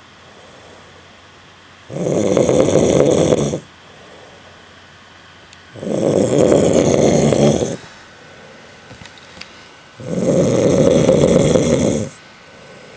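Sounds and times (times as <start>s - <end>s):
person snoring: 1.9s - 4.3s, 5.7s - 7.9s, 10.0s - 12.9s.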